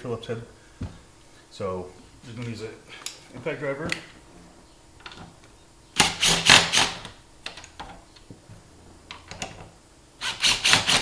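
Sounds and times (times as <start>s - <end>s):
impact driver hammering: 6.0s - 7.1s, 10.2s - 11.0s.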